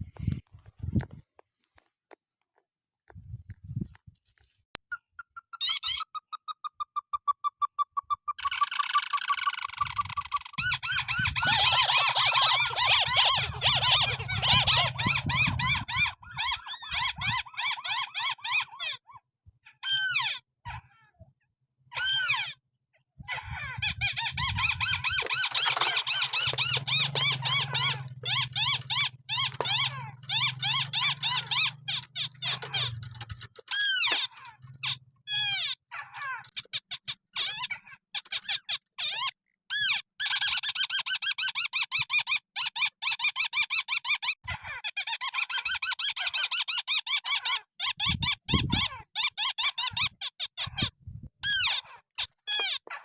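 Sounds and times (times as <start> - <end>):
bird harsh pulsed calls: 4.9 - 19.0, 23.4 - 38.9.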